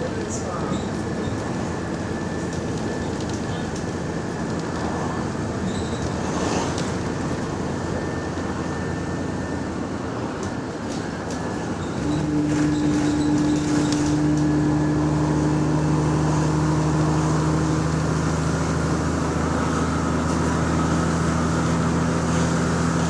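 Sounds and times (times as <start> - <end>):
bus engine and exhaust drone: 0.0 - 23.0.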